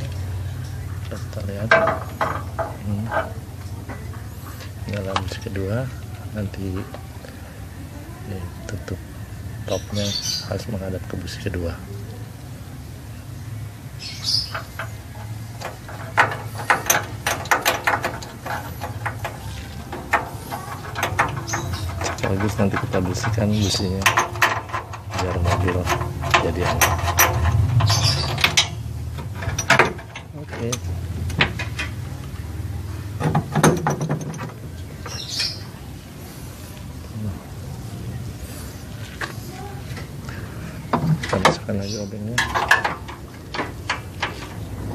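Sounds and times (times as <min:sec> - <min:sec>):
hand tools clicking on metal: 0:14.5 - 0:32.0, 0:42.4 - 0:44.6.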